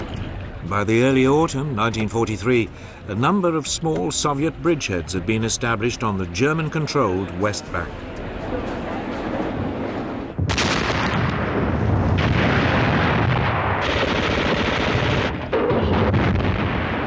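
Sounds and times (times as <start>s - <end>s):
battle gunfire: 10.4s - 17.0s
machine-gun fire: 10.4s - 17.0s.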